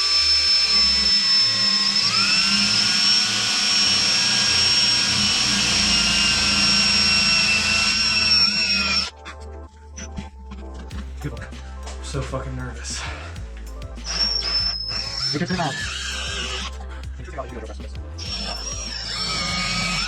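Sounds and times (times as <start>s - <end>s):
power drill whining: 0.0s - 9.1s, 12.8s - 16.8s, 18.2s - 20.0s.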